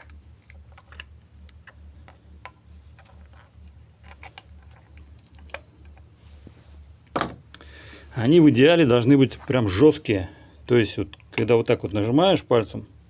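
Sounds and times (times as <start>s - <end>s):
low steady hum: 0.0s - 13.0s
small metal parts clicking: 2.4s - 6.0s.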